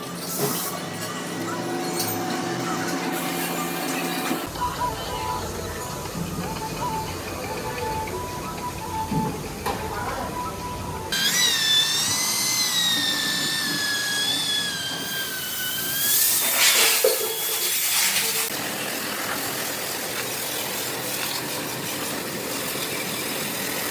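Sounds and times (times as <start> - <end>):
steady machine noise: 0.0 - 23.9
power tool whining: 11.1 - 18.6.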